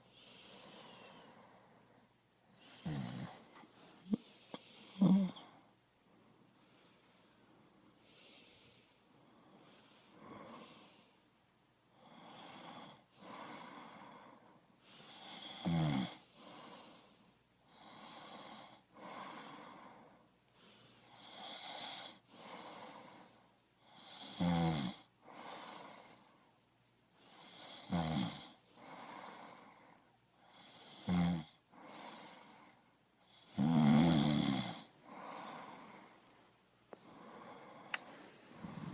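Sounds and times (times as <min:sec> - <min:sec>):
person breathing: 0:00.0 - 0:11.3, 0:11.9 - 0:15.3, 0:16.2 - 0:24.0, 0:25.0 - 0:26.6, 0:28.4 - 0:31.0, 0:31.6 - 0:33.6, 0:34.4 - 0:38.9
rattling snore-like breaths: 0:37.0 - 0:38.9.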